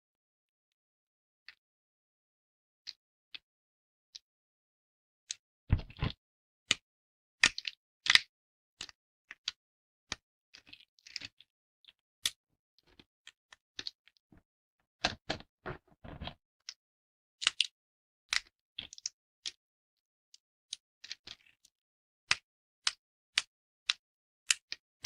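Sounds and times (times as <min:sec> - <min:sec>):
dry soap cracking by hand: 0:07.4 - 0:11.5, 0:17.4 - 0:19.6.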